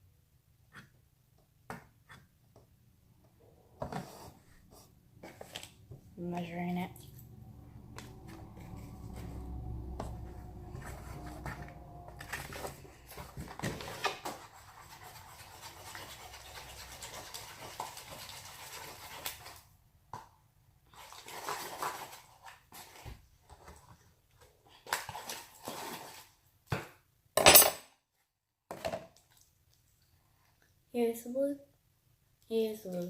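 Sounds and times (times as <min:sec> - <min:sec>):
low steady hum: 0:05.2 - 0:13.3.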